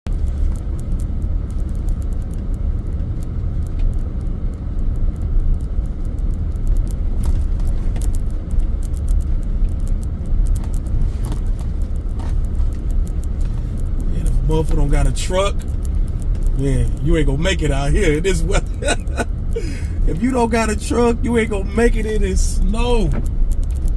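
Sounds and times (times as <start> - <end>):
light ticks and crackles: 0.1 - 23.9
vehicle engine and tyre rumble: 0.1 - 23.9.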